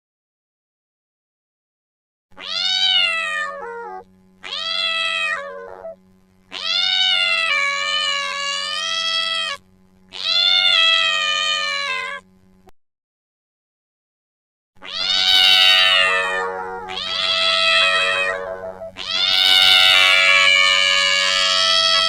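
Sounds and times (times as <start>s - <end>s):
cat yowling angrily: 2.4s - 12.2s, 14.8s - 22.0s.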